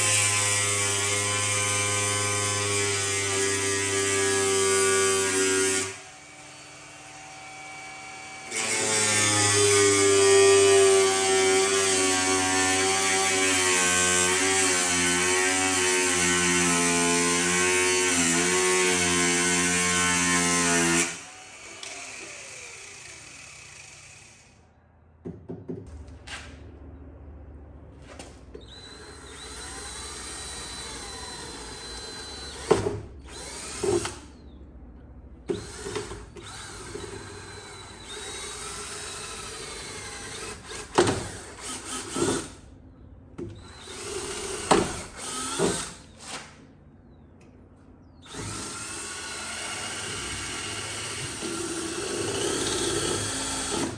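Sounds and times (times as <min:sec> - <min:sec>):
power drill running: 0:16.1 - 0:24.6, 0:28.6 - 0:34.4, 0:35.5 - 0:42.6, 0:43.6 - 0:46.5, 0:48.2 - 0:53.9.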